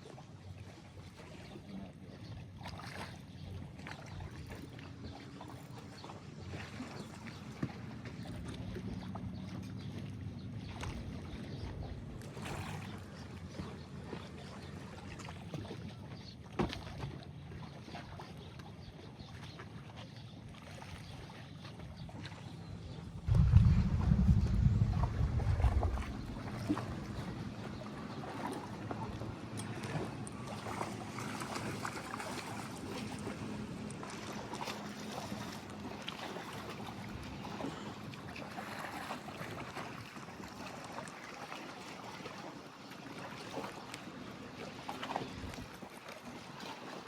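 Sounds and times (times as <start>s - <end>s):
water lapping: 0.0s - 47.0s
wind: 0.0s - 47.0s
small splashes: 2.6s - 3.2s, 3.8s - 18.7s, 19.3s - 47.0s
wind noise: 23.2s - 27.5s
faint low hum: 23.2s - 27.9s.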